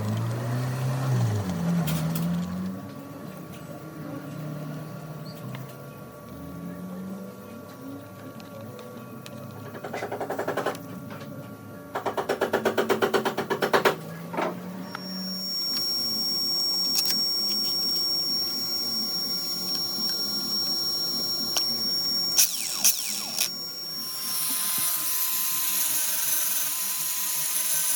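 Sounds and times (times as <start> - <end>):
electric grinder whining: 14.8 - 27.9.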